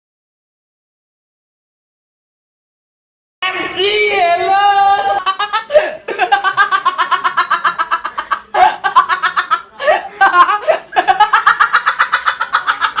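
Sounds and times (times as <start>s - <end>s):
person laughing hard: 5.0s - 13.0s.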